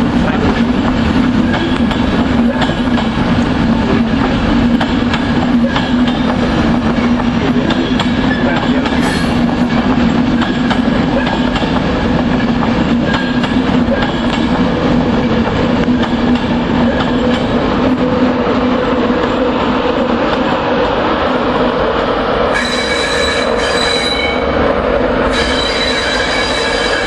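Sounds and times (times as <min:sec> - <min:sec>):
train rumbling on rails: 0:00.0 - 0:27.0
wheels clicking over rail joints: 0:00.3 - 0:14.7.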